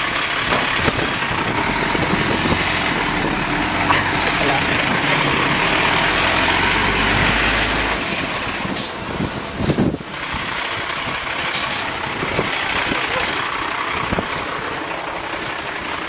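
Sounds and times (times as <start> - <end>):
low engine drone: 0.0 - 16.0
sound rising and falling in pitch: 1.2 - 8.5
garbage truck hiss: 11.4 - 12.0.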